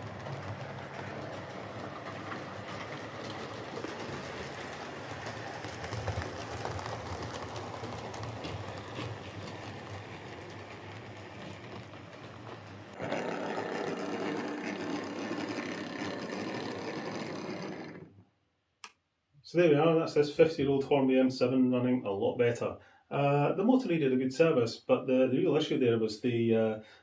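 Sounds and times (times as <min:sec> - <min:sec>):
wheels clicking along rails: 0:00.0 - 0:18.2
small electric motor whirring: 0:13.0 - 0:18.1.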